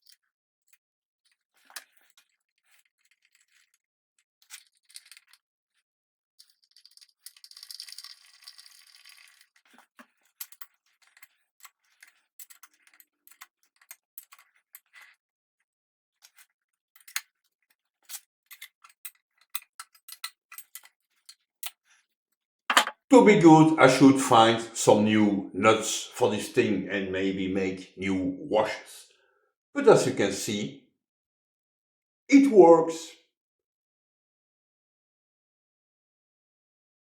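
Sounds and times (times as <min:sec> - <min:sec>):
metal parts clicking and rattling: 0:04.4 - 0:05.4, 0:06.4 - 0:15.2, 0:16.2 - 0:22.0.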